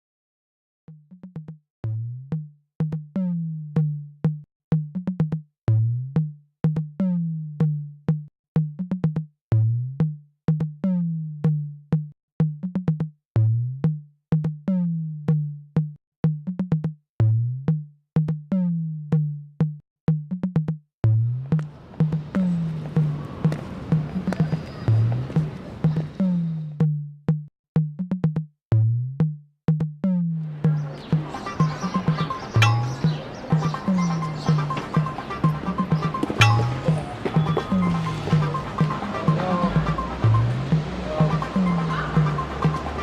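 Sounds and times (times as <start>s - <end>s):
deep kick drums: 5.7s - 6.9s, 9.5s - 10.7s, 13.4s - 14.6s, 17.2s - 18.4s, 26.8s - 30.0s.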